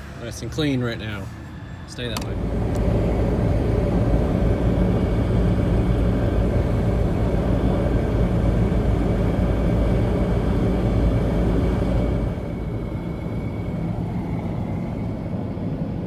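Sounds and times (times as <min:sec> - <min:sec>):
car engine and road noise: 0:00.0 - 0:16.0.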